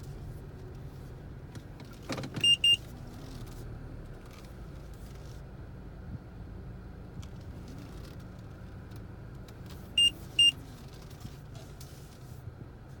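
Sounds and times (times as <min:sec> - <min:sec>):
car engine low rumble: 0:00.0 - 0:13.0
short electronic beeps: 0:10.0 - 0:10.6.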